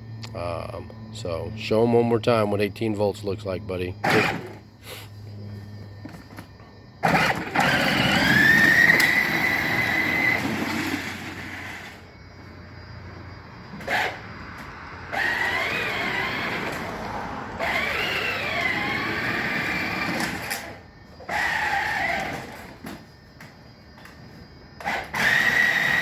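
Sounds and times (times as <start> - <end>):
electric motor whine: 5.4 - 12.2, 13.7 - 23.2, 24.8 - 26.0.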